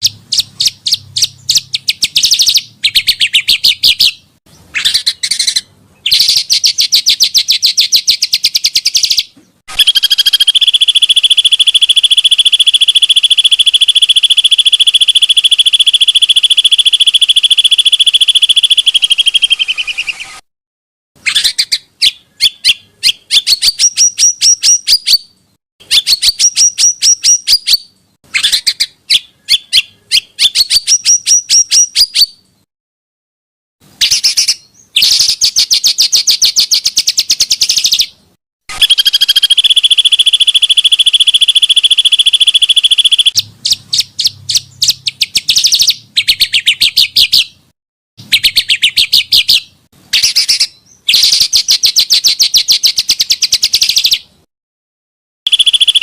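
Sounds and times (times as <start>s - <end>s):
songbirds trilling and chattering: 0.0s - 9.6s.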